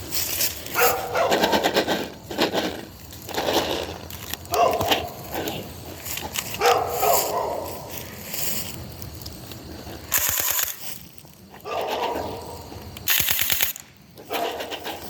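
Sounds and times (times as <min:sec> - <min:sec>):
dog barking: 0:00.8 - 0:01.6, 0:04.5 - 0:05.2, 0:06.6 - 0:07.9, 0:11.6 - 0:12.6
gel-bead gun clicking shots: 0:10.1 - 0:11.0, 0:13.0 - 0:13.9.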